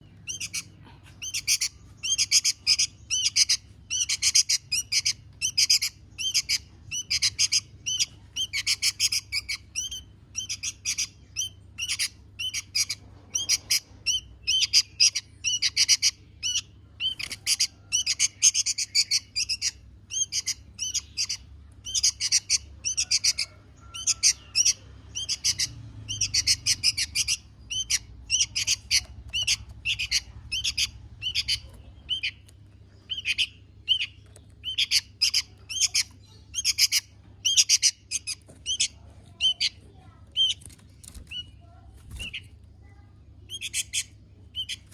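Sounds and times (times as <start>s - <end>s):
small birds chirping: 0.0s - 44.9s.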